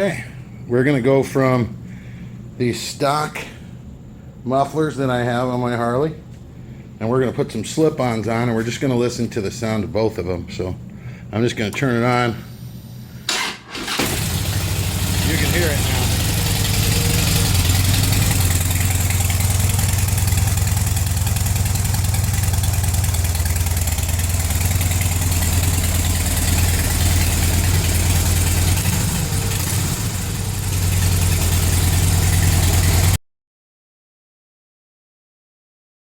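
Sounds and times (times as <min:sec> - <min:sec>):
motorcycle engine idling: 0:13.8 - 0:33.2.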